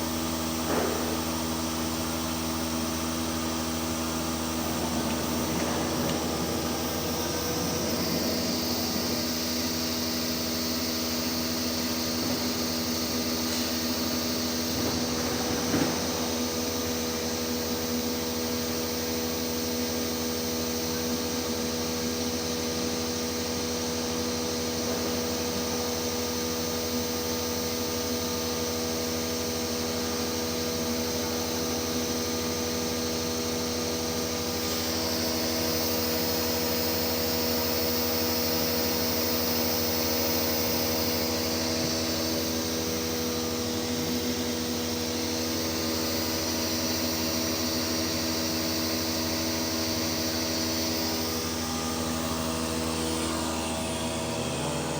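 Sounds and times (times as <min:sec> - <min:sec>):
machine motor hum: 0:00.0 - 0:54.9
machine hiss: 0:00.2 - 0:19.4.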